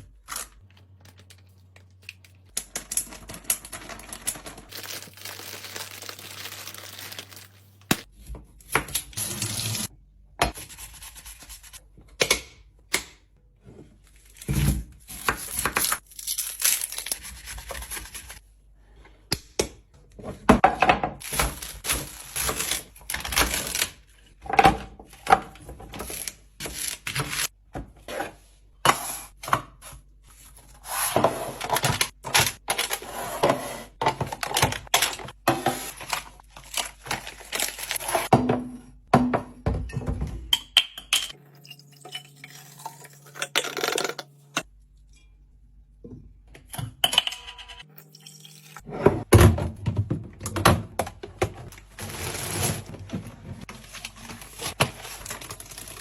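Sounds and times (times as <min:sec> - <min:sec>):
plastic packaging crinkling: 0:00.2 - 0:08.1, 0:53.7 - 0:56.0.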